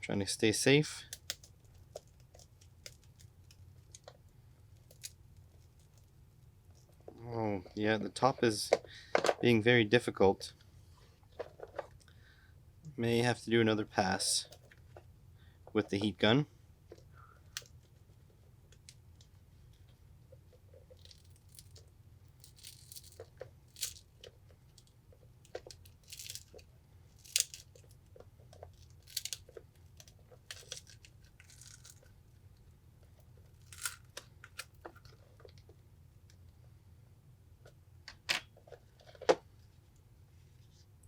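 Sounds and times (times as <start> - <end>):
cracked glass crackling: 22.4 - 24.0, 27.2 - 27.6, 28.9 - 29.4, 30.0 - 32.0.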